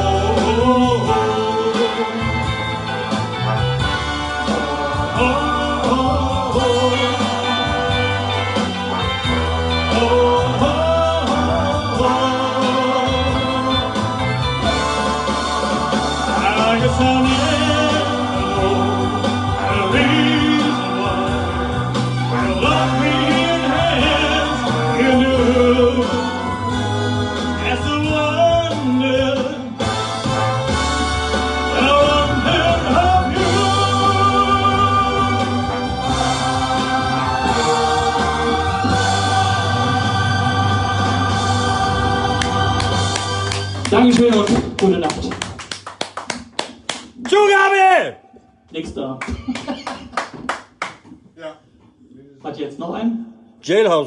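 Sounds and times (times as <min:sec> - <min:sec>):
choir-like singing: 0:00.0 - 0:27.7, 0:31.7 - 0:43.8
steady bass line: 0:00.0 - 0:45.4
band playing: 0:00.0 - 0:46.5.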